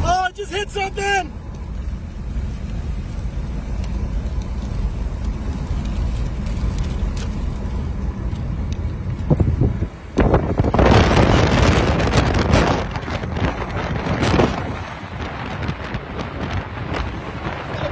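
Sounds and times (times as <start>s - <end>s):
vehicle rumble: 0.0s - 17.9s.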